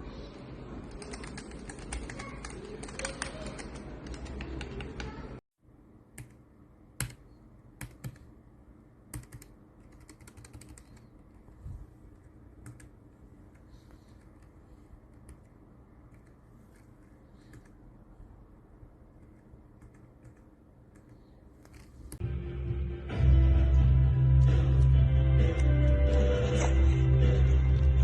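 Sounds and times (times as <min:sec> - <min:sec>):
mechanical keyboard typing: 0:00.9 - 0:05.2, 0:07.0 - 0:07.2, 0:07.8 - 0:08.3, 0:09.1 - 0:11.4, 0:12.2 - 0:17.8, 0:19.2 - 0:22.0.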